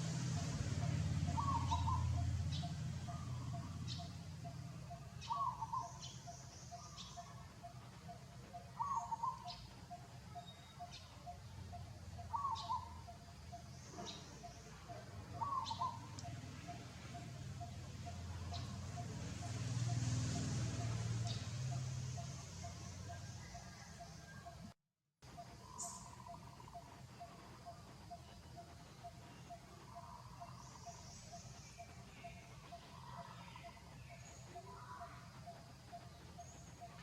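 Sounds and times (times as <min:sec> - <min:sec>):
bird calling: 0:00.8 - 0:20.0, 0:25.4 - 0:37.0
steady low hum: 0:25.2 - 0:37.0.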